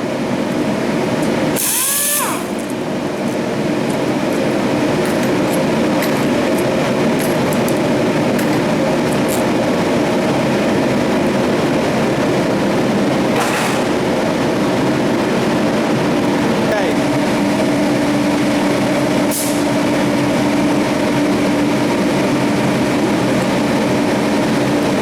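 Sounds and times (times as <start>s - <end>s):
power tool cutting steel: 1.5s - 2.8s, 13.3s - 14.1s.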